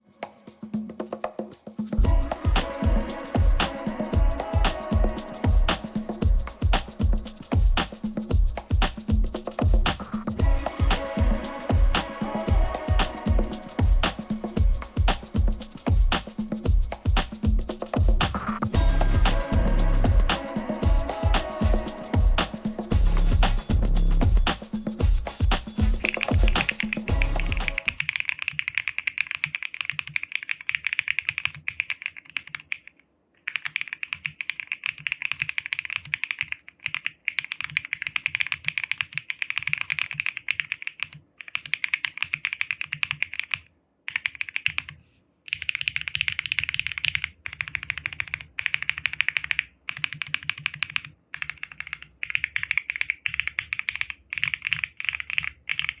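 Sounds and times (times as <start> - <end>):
mechanical keyboard typing: 27.8 - 56.0.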